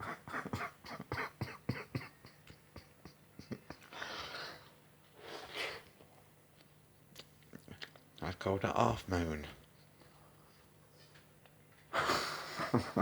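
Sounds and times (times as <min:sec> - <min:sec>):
breaths: 0:03.8 - 0:05.9
wet mouth chewing: 0:05.4 - 0:08.2.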